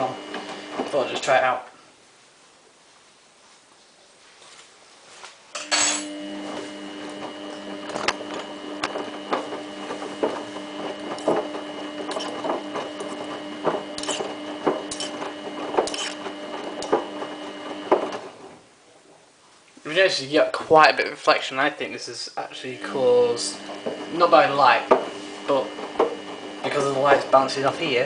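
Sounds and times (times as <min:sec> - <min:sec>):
electric motor humming: 0:00.0 - 0:01.2, 0:05.8 - 0:18.5, 0:22.5 - 0:28.0.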